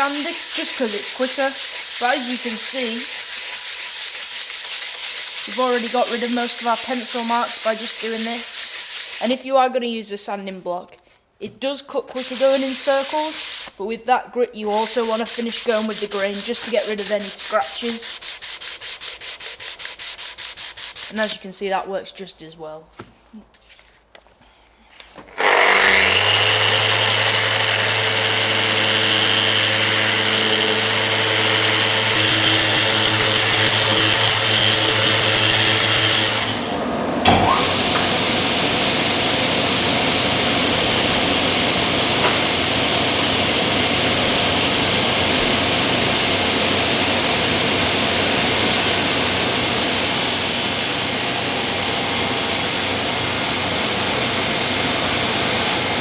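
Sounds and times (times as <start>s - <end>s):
power tool humming whine: 25.4s - 56.0s.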